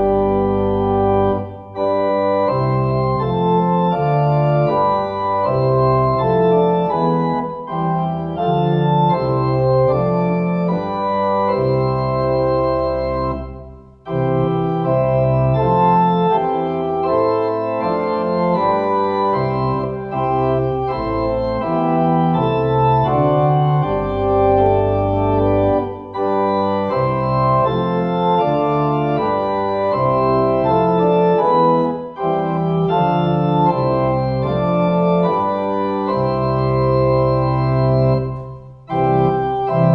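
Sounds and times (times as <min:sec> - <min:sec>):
organ playing slow chords: 0:00.0 - 0:39.9.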